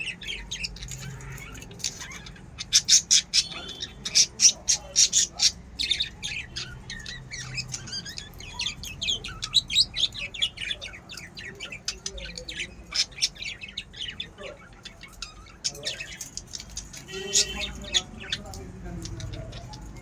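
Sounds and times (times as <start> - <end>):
budgerigar squawks: 0.0 - 8.8
budgerigars chirping and chattering: 0.0 - 20.0.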